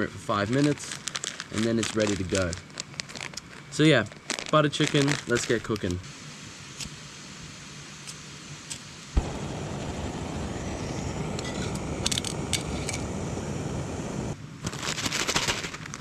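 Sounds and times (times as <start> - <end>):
gas stove burning: 5.7 - 14.4.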